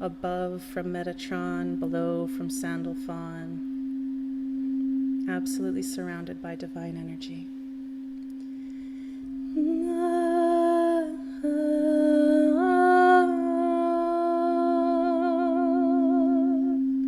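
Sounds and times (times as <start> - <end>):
pure sustained tone: 0.0 - 17.0
woman humming held notes: 9.4 - 17.0.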